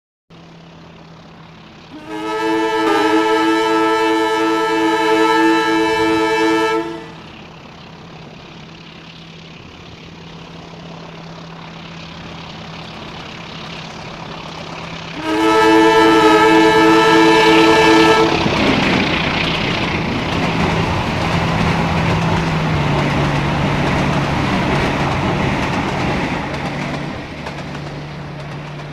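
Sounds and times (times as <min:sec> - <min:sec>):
train rumbling: 0:00.3 - 0:28.9
train horn blast: 0:01.9 - 0:07.4, 0:15.1 - 0:18.6.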